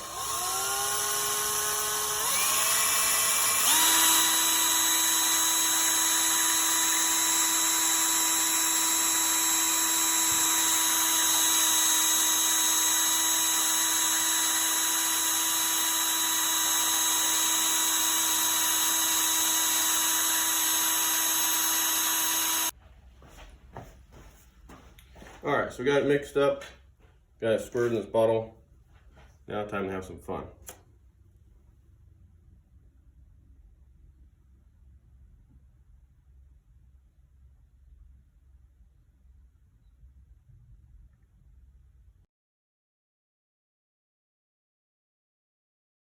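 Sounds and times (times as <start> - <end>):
power drill whining: 0.0 - 22.8.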